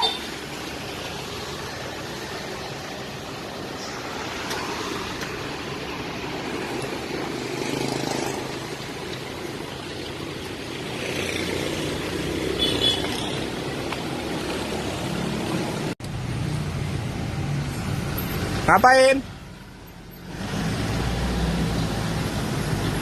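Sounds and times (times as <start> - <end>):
outdoor background noise: 0.0 - 23.0.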